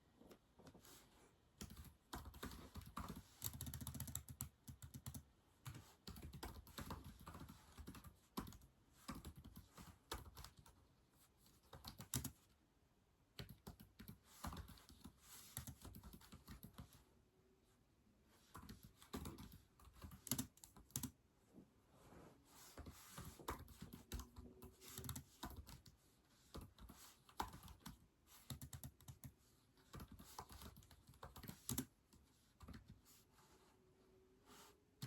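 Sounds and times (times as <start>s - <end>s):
typing on a keyboard: 1.6s - 10.8s, 11.5s - 12.4s, 13.4s - 17.0s, 18.6s - 21.1s, 23.2s - 25.9s, 26.5s - 31.9s, 32.6s - 33.0s.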